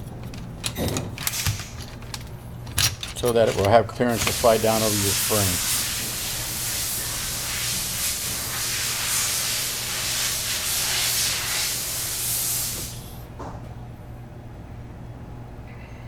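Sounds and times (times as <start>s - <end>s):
low steady hum: 0.0s - 7.2s
steady hiss: 4.0s - 13.2s.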